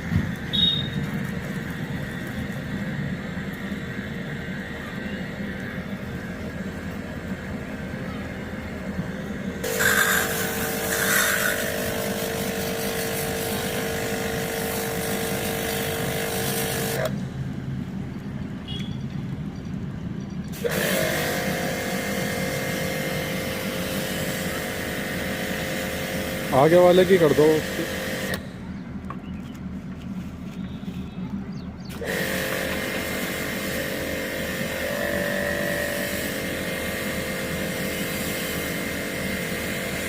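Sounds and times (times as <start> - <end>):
pump humming: 0.0 - 18.8, 20.5 - 28.7, 31.9 - 40.0
motor whine: 0.0 - 18.9, 20.5 - 31.1, 31.9 - 40.0
water jet spraying hiss: 9.6 - 17.2, 20.6 - 28.4, 31.9 - 40.0.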